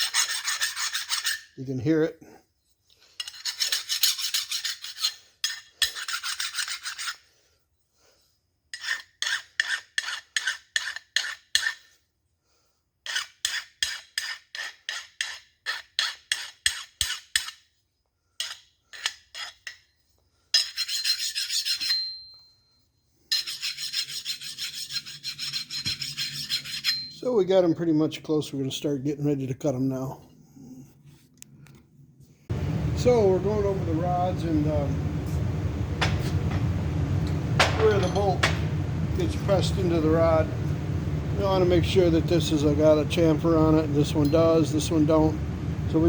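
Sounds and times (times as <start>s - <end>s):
hand file rasping on metal: 0.0s - 1.6s, 3.2s - 7.3s, 8.7s - 11.9s, 13.0s - 17.6s, 18.4s - 19.8s, 20.6s - 22.1s, 23.3s - 27.2s.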